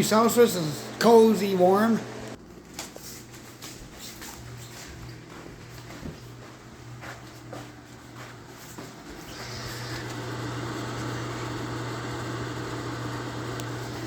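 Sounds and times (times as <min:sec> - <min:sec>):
appliance fan running: 0:00.0 - 0:14.0
steady electric hum: 0:00.0 - 0:14.0.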